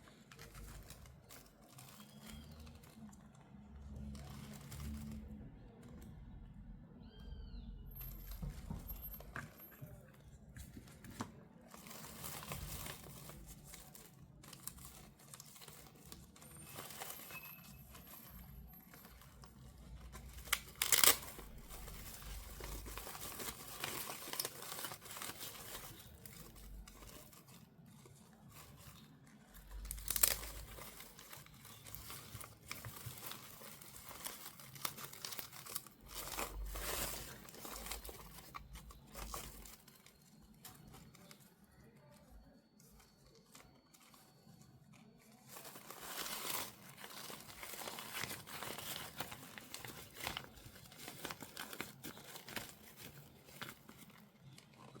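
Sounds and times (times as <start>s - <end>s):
toy packaging crinkling: 0.0s - 6.3s, 8.1s - 55.0s
packaging ripping: 18.9s - 41.4s, 45.4s - 55.0s.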